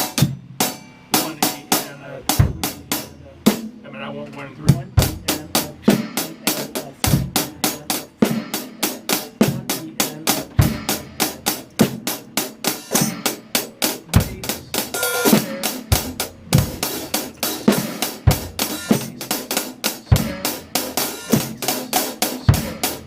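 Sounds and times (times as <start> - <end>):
hi-hat strokes: 0.0 - 3.3, 4.7 - 23.0
bass drum kicks: 2.3 - 3.8, 4.6 - 6.4, 9.4 - 19.2, 20.1 - 21.6.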